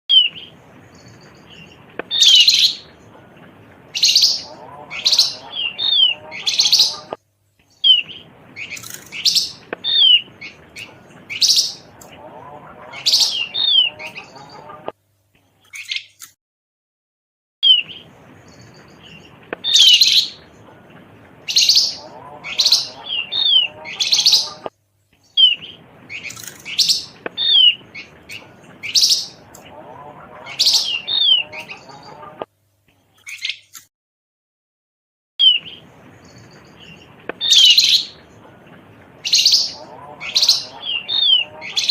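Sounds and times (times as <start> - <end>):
bird chirps and whistles: 17.6 - 18.0, 25.4 - 26.3, 35.4 - 35.8.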